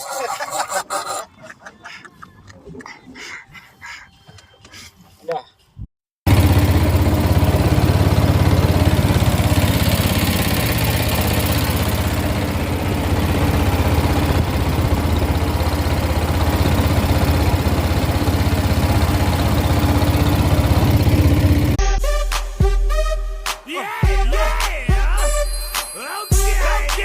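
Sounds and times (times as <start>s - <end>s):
engine idling: 6.3s - 21.8s.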